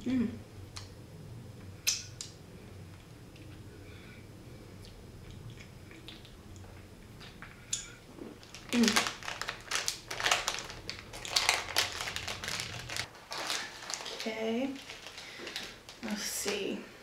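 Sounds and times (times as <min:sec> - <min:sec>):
plastic packaging crinkling: 0:08.4 - 0:16.7.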